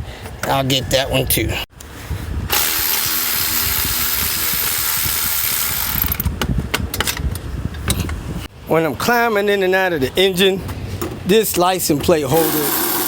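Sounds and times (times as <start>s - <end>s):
cordless ratchet spinning: 2.5s - 6.2s, 12.3s - 13.0s.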